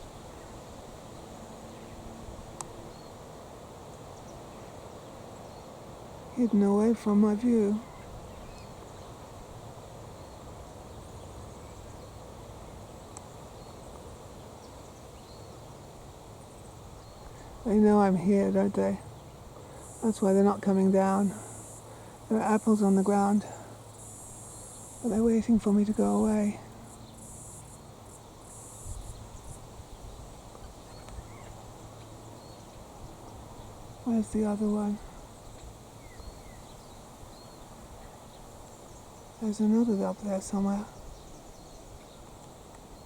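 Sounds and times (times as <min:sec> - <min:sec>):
wind: 0:00.0 - 0:43.0
high-pitched insect chirping: 0:21.1 - 0:29.6
wind rumble on microphone: 0:28.8 - 0:43.0.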